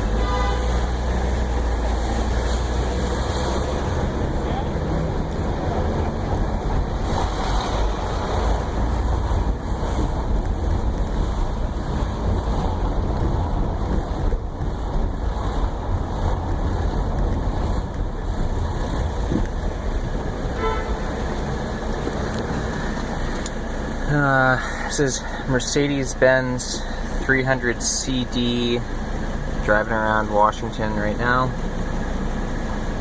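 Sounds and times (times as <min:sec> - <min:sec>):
car horn toot: 0:00.0 - 0:01.1, 0:20.5 - 0:21.2
car engine and road noise: 0:00.0 - 0:33.0.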